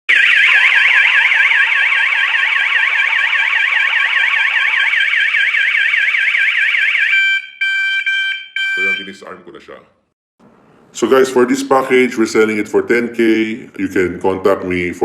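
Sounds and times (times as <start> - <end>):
warbling alarm siren: 0.1 - 9.4.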